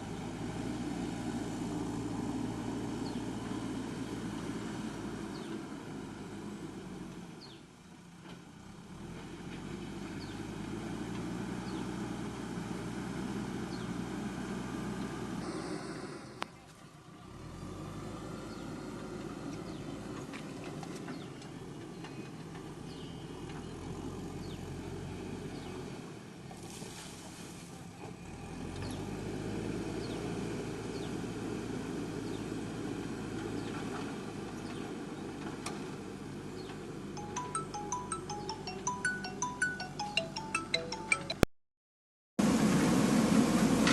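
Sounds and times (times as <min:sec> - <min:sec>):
diesel engine running: 0:00.0 - 0:26.6, 0:42.4 - 0:43.9.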